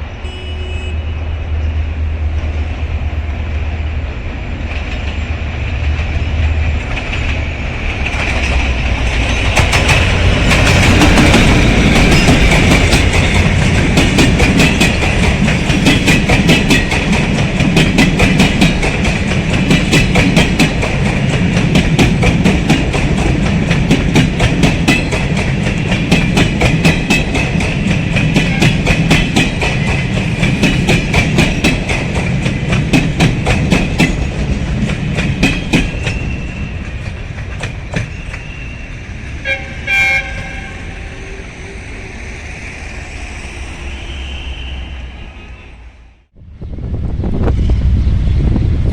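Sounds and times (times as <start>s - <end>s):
train horn blast: 0.2s - 1.4s, 39.4s - 41.2s
train wheels clacking over rail joints: 4.6s - 38.7s.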